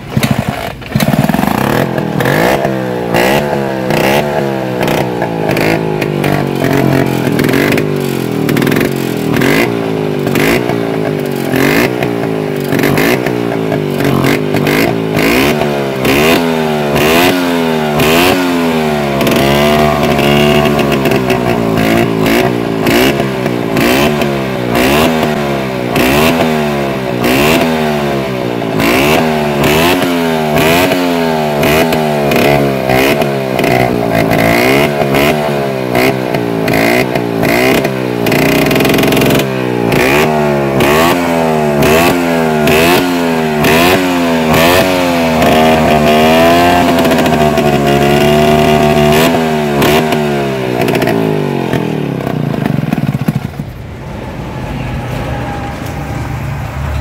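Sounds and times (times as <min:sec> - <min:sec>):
exhaust crackling pops: 0:00.0 - 0:16.4, 0:43.6 - 0:53.8
scooter engine revving: 0:00.0 - 0:57.0.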